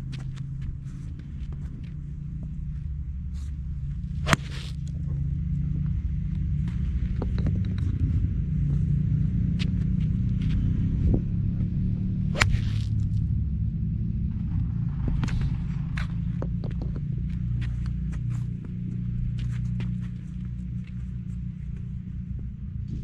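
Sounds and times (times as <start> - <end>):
steady low rumble: 0.0 - 23.0
golf iron striking ball: 4.2 - 5.0, 12.2 - 13.2.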